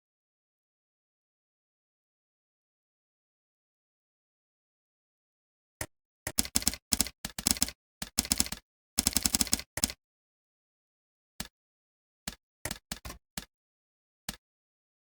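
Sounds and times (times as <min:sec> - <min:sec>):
computer keyboard typing: 0:06.3 - 0:10.0.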